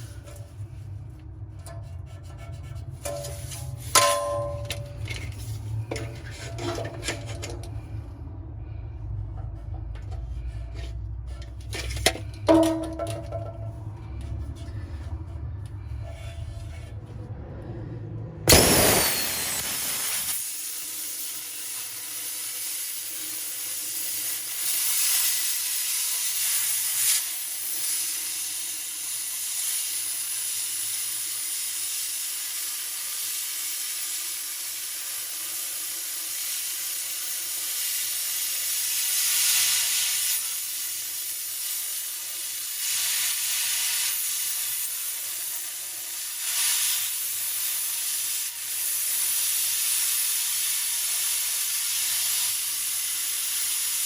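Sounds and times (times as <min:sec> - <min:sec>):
plasma cutter arc crack: 0:18.5 - 0:54.0
plasma cutter hissing: 0:18.5 - 0:54.0.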